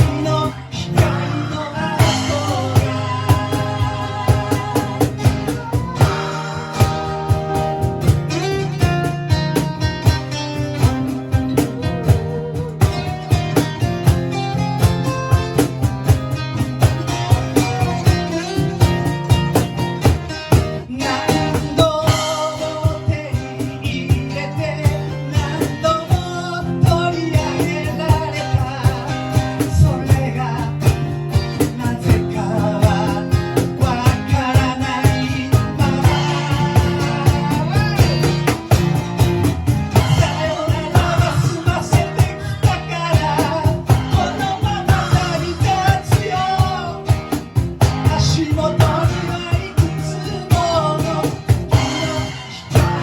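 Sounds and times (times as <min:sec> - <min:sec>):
person singing: 0:00.0 - 0:09.1, 0:11.3 - 0:13.8, 0:20.8 - 0:30.9, 0:31.5 - 0:38.6, 0:39.9 - 0:53.0
rock band playing: 0:00.0 - 0:53.0.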